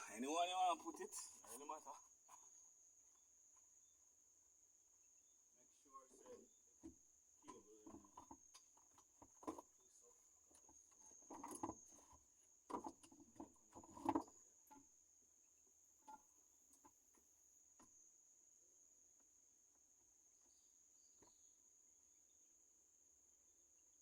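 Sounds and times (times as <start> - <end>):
cricket trill: 0.0 - 24.0
faint clicks and knocks of parts: 6.1 - 14.9.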